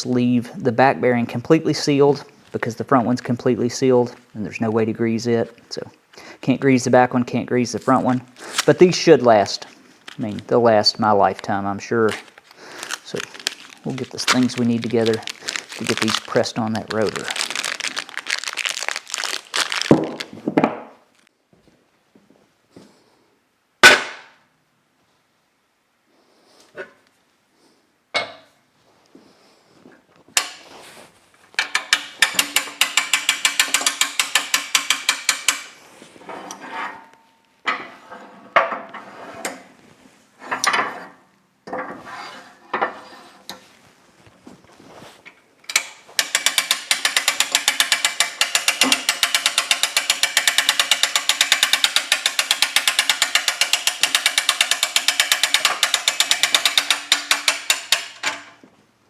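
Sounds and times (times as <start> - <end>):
metal parts clattering: 12.0 - 19.8, 45.7 - 58.6
ratchet clicking: 31.6 - 35.8, 45.7 - 58.3.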